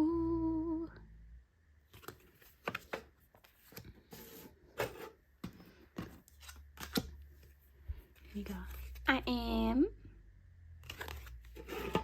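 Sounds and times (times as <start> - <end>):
person saying ooh: 0.0 - 1.0
photo cards and packaging rustling: 1.8 - 9.3, 10.8 - 12.0.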